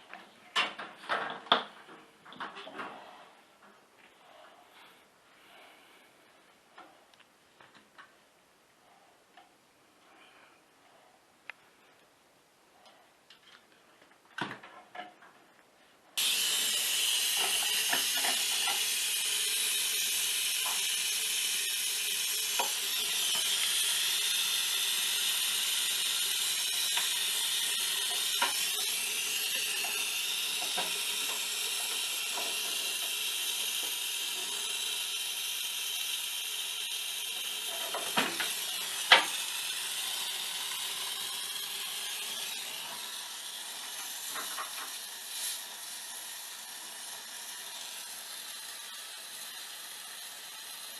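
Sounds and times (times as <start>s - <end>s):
pressurised gas hissing: 16.2s - 50.9s.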